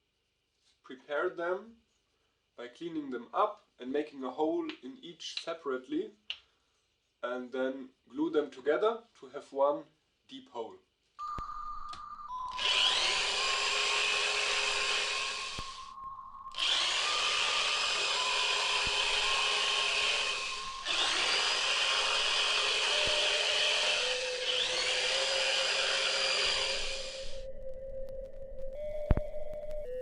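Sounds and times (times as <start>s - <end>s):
power tool cutting wood: 12.5s - 27.4s.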